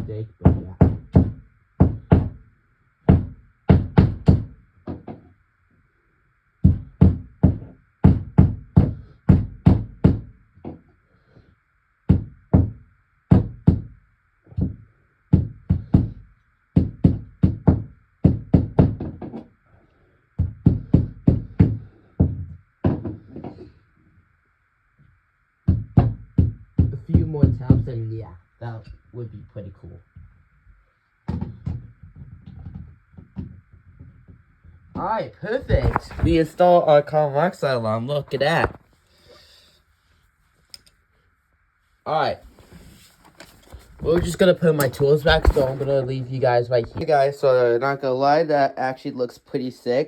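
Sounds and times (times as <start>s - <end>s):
hammer knocks on wall: 0.5s - 2.4s, 3.1s - 5.3s, 6.6s - 10.8s, 12.1s - 13.9s, 14.6s - 16.2s, 16.8s - 19.5s, 20.4s - 23.6s, 25.6s - 27.9s.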